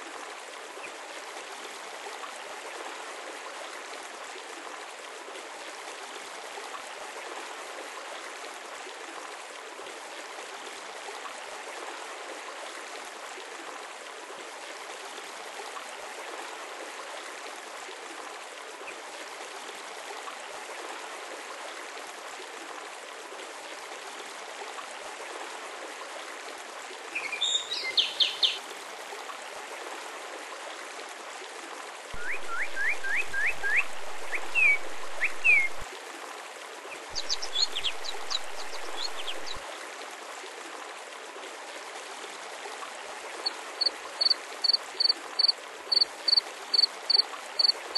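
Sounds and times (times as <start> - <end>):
running water: 0.0 - 47.9
birds chirping: 32.2 - 35.8, 37.2 - 39.6, 44.2 - 47.7.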